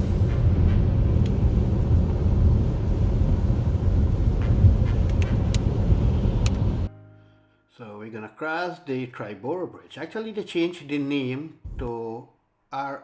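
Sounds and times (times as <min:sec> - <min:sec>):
car road and engine rumble: 0:00.0 - 0:06.9
faint clicks: 0:06.4 - 0:06.7.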